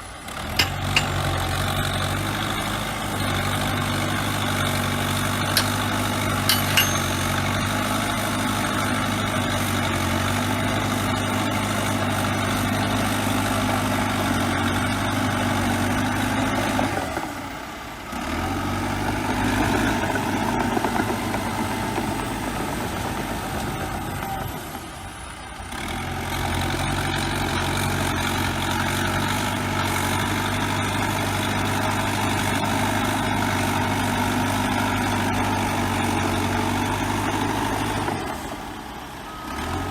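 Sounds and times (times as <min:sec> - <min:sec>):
bulldozer diesel engine running: 0:00.0 - 0:39.9
sharp metallic clicks: 0:00.6 - 0:01.4, 0:05.4 - 0:07.3.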